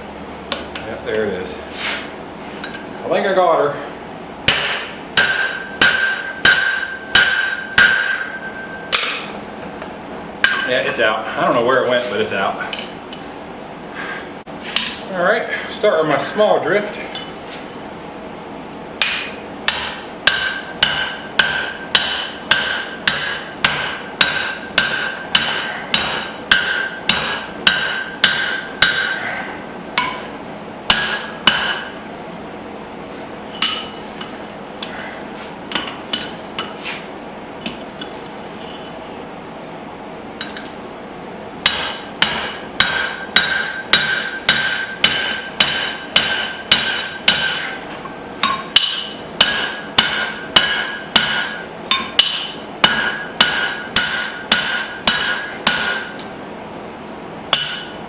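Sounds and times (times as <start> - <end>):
hammer striking metal drift: 4.5 - 9.4, 19.0 - 29.3, 30.9 - 32.0, 41.6 - 47.8, 48.4 - 56.3, 57.5 - 58.0.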